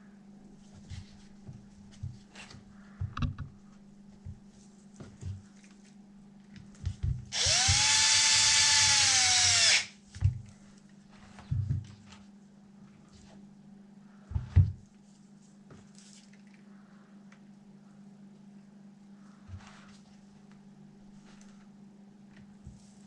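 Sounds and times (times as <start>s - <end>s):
cordless drill whining: 7.3s - 9.9s.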